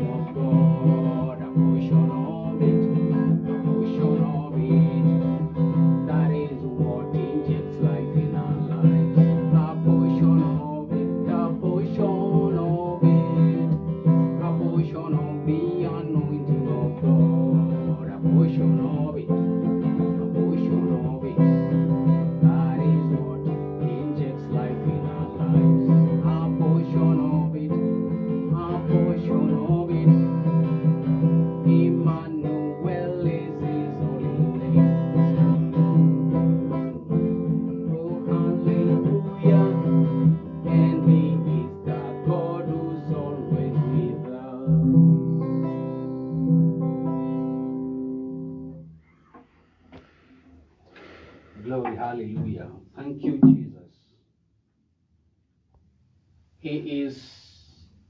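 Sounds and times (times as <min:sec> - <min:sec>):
strummed acoustic guitar: 0:00.0 - 0:50.3, 0:51.0 - 0:53.8.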